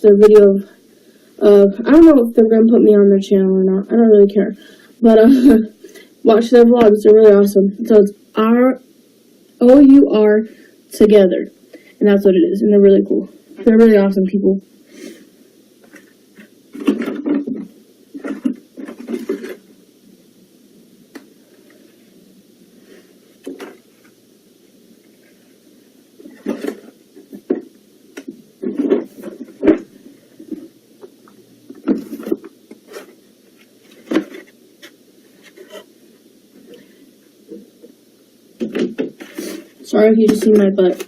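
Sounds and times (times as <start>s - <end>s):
low background hum: 0.0s - 41.0s
knocks and clunks of objects moved: 15.8s - 19.6s, 23.4s - 24.1s, 26.2s - 30.7s, 31.7s - 33.2s, 33.8s - 35.9s.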